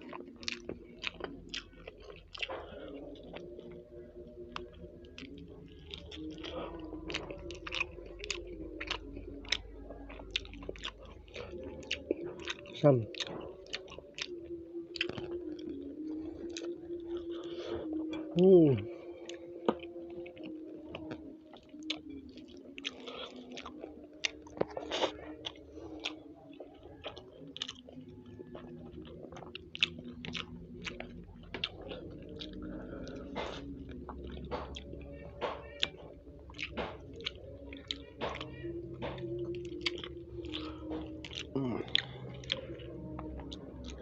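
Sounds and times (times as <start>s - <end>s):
person chewing and biting: 0.0s - 18.4s, 19.2s - 44.0s
mouth clicks and smacks: 0.1s - 3.8s, 4.6s - 15.9s, 28.6s - 44.0s.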